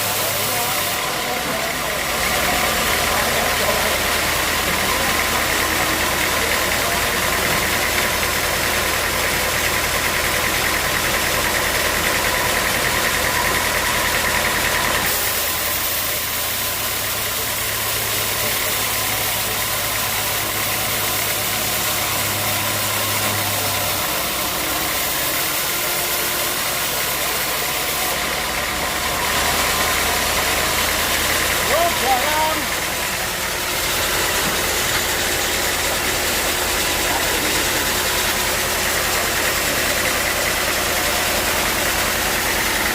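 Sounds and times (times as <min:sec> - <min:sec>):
sawmill machinery humming: 0:00.0 - 0:42.9.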